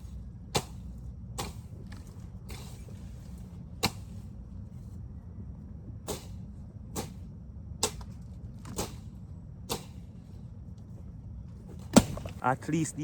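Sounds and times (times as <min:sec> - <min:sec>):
hand tool chopping bush: 0:00.5 - 0:01.7, 0:03.8 - 0:04.2, 0:09.7 - 0:10.0.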